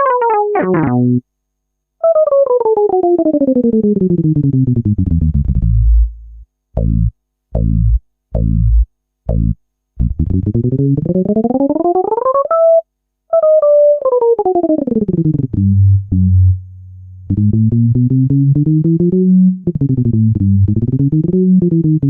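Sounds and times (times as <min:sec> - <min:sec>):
short falling bloops: 0:00.0 - 0:01.2
tone gliding up: 0:00.0 - 0:01.2.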